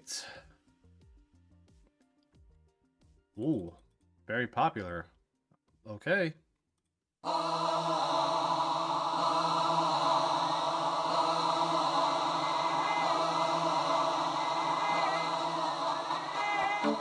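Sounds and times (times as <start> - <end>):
choir-like synth chord: 7.2 - 17.0.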